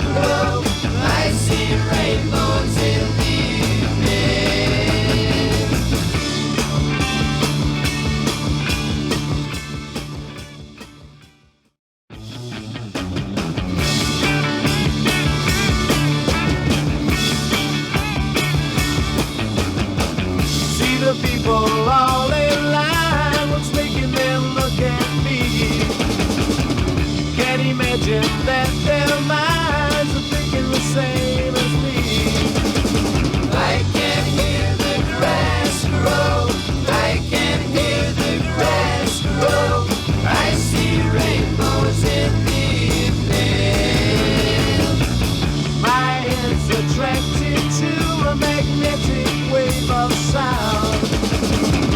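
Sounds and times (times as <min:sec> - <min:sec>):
psychedelic rock music: 0:00.0 - 0:11.4, 0:12.1 - 0:51.9
wavering lead guitar line: 0:12.7 - 0:51.9.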